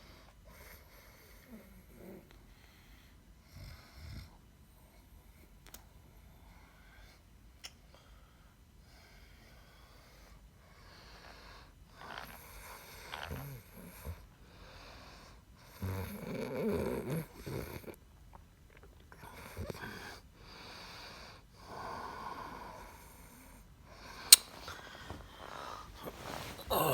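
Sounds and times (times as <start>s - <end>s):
sharp click: 24.3s - 24.6s
person snoring: 26.5s - 26.9s.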